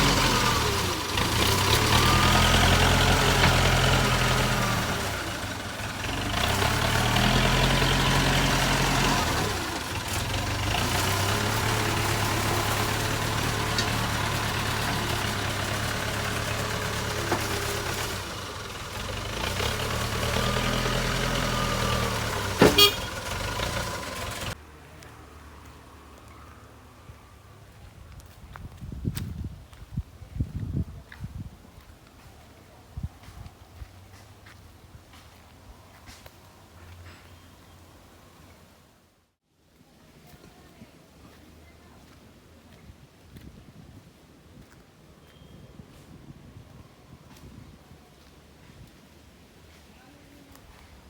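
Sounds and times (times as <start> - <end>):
backhoe diesel engine working: 0.0 - 24.6.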